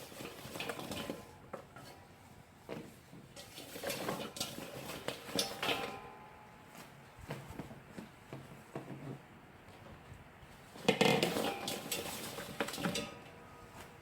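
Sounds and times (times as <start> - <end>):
kitchen containers knocking and clinking: 0.0 - 1.9, 3.2 - 6.3, 10.7 - 13.4.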